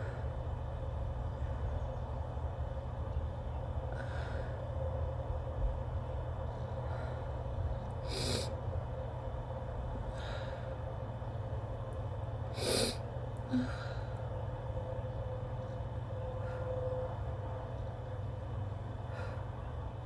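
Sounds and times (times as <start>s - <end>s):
steady low hum: 0.0s - 20.0s
person sniffing and breathing in: 8.1s - 8.5s, 12.6s - 13.0s.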